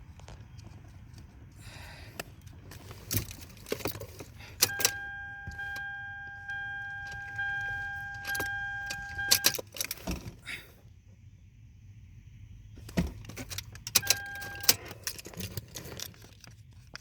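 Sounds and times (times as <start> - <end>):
electronic warning tone: 4.6 - 9.5
keys jangling: 6.9 - 10.0, 13.3 - 16.4
clicks and knocks of handling: 12.8 - 17.0.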